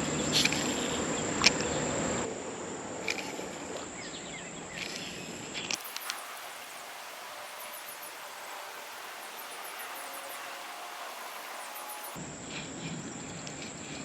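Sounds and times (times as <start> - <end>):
insects trilling: 5.8 - 12.2.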